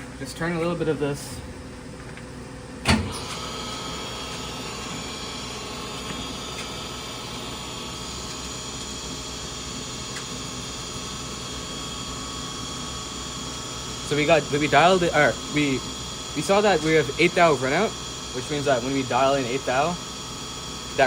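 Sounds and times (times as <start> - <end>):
lathe motor whining: 0.0 - 21.0
lathe switch clunk: 2.8 - 3.5.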